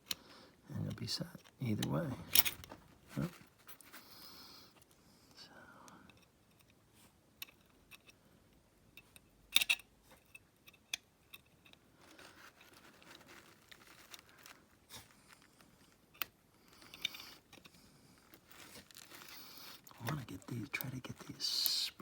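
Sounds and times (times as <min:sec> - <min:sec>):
soft rustling: 0:01.2 - 0:04.9, 0:11.6 - 0:22.0.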